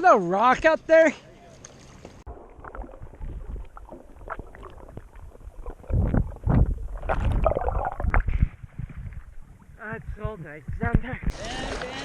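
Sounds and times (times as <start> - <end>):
water sloshing from kayak paddling: 1.5 - 9.8
low gurgling thuds: 2.1 - 11.4.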